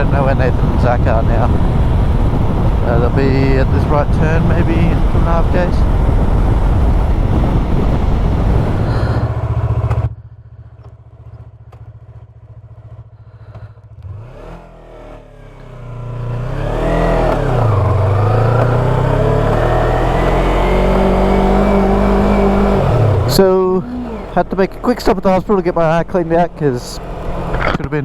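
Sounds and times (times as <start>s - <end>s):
wind on microphone: 0.0s - 10.1s
motorcycle engine idling: 0.0s - 14.1s, 17.1s - 28.0s
motorcycle engine revving: 0.0s - 28.0s.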